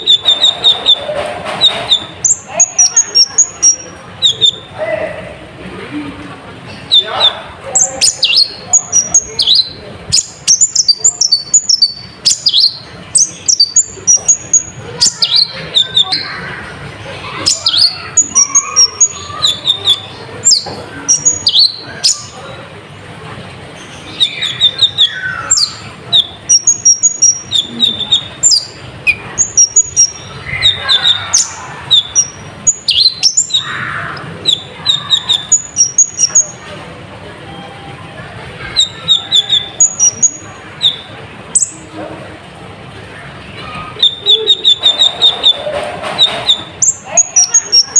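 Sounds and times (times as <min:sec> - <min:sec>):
sunbird twittering song: 0:00.0 - 0:04.7, 0:06.8 - 0:16.6, 0:17.2 - 0:22.5, 0:23.8 - 0:36.6, 0:38.7 - 0:41.8.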